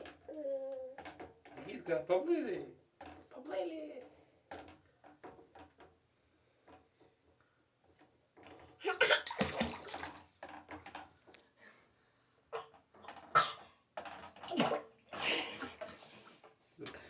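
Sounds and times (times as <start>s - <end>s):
water splashing in bathtub: 8.8s - 11.6s.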